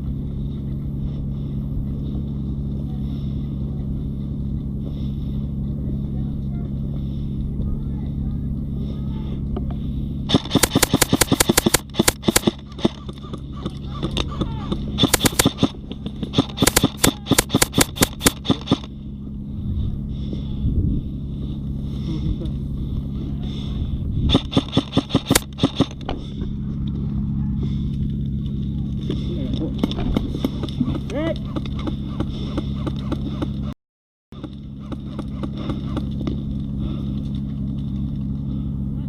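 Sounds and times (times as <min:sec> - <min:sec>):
airsoft guns firing: 0:10.3 - 0:13.2, 0:14.7 - 0:18.9, 0:24.3 - 0:26.0.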